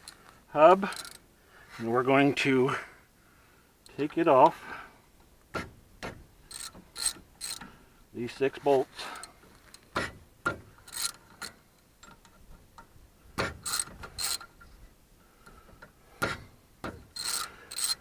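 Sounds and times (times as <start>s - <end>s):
metallic clinks: 0.9s - 1.2s
ratchet wrench clicking: 0.9s - 1.2s, 6.5s - 7.7s, 10.9s - 12.2s, 13.6s - 14.5s, 17.1s - 18.0s.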